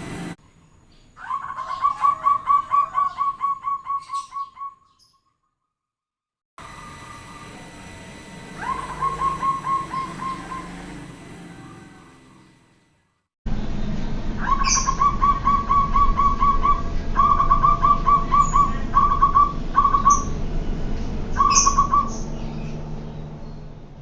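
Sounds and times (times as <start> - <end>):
dove cooing rapidly: 1.2 - 4.8, 8.5 - 12.2, 14.4 - 20.3
low background hum: 6.6 - 12.9, 13.5 - 24.0.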